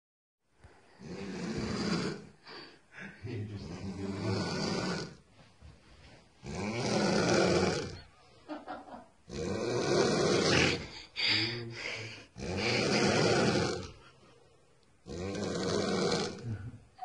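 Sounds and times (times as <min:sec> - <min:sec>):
woman snoring: 0:01.0 - 0:02.3, 0:06.4 - 0:08.1, 0:09.3 - 0:14.0, 0:15.1 - 0:16.6.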